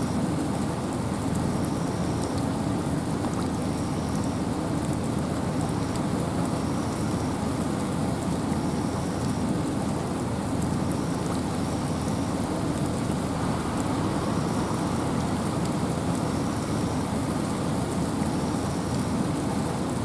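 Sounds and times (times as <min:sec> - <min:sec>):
rain hissing: 0:00.1 - 0:20.0
raindrop ticks: 0:00.4 - 0:09.8, 0:10.5 - 0:19.6.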